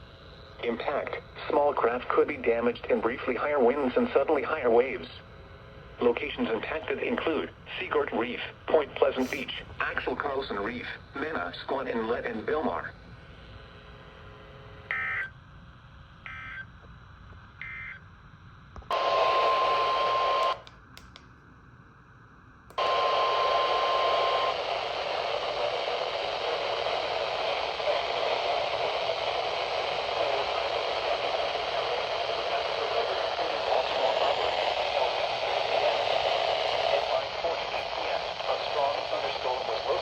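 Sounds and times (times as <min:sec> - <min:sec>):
radio static: 0:00.6 - 0:12.9, 0:18.9 - 0:20.7, 0:22.8 - 0:40.0.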